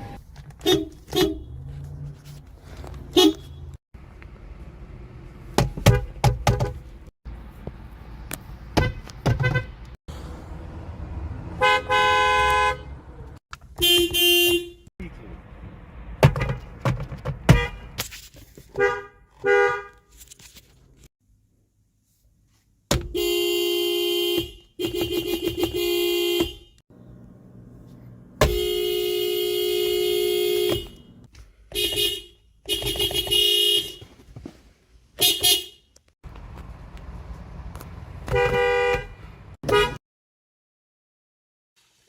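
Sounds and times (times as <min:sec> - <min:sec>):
car horns honking: 0:00.0 - 0:02.0, 0:03.0 - 0:03.8, 0:05.7 - 0:06.9, 0:08.8 - 0:09.9, 0:11.5 - 0:14.9, 0:17.4 - 0:18.0, 0:18.7 - 0:20.1, 0:22.9 - 0:26.8, 0:28.4 - 0:34.2, 0:35.2 - 0:36.0, 0:38.2 - 0:40.0.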